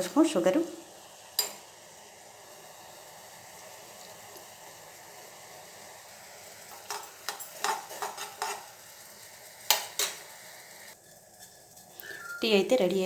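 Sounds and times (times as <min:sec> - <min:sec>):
tea boiling and bubbling: 0:00.0 - 0:13.0
spoon clinking against pan: 0:01.4 - 0:01.6.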